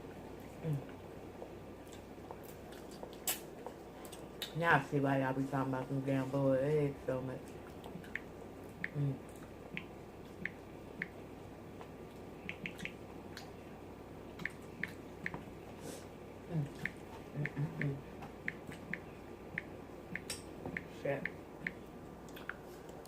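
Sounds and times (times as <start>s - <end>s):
mouth smacks and chewing clicks: 7.6s - 11.2s, 11.8s - 13.5s, 14.4s - 15.4s, 16.7s - 23.0s.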